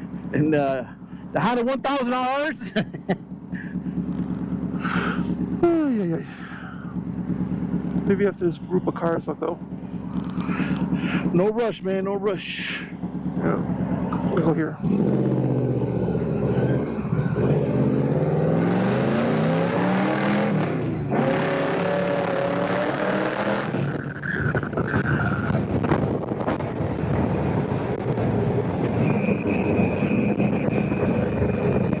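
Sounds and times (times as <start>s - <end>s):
motorcycle engine accelerating: 2.3s - 32.0s
wind rush: 24.4s - 32.0s.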